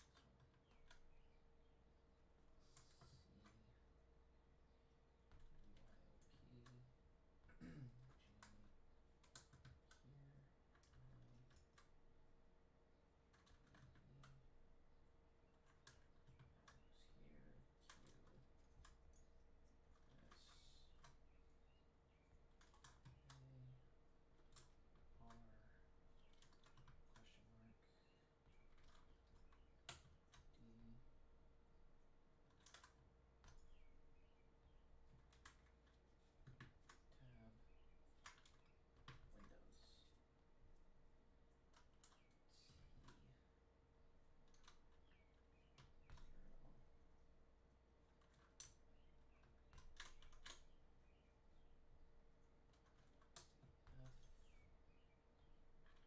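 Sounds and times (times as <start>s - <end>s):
faint steady hum: 0.0s - 56.0s
mechanical keyboard clicks: 32.5s - 33.9s, 49.4s - 50.7s.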